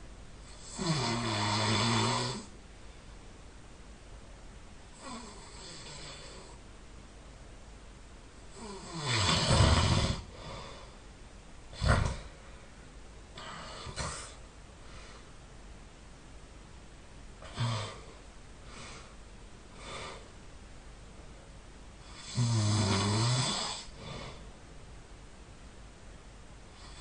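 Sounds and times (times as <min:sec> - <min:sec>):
person snoring: 0:00.5 - 0:02.5, 0:05.0 - 0:06.6, 0:08.5 - 0:11.0, 0:17.4 - 0:19.1, 0:22.0 - 0:24.4.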